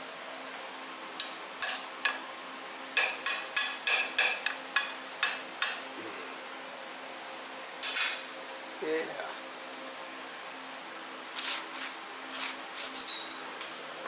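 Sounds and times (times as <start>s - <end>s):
hammer tapping steel: 3.0s - 5.8s.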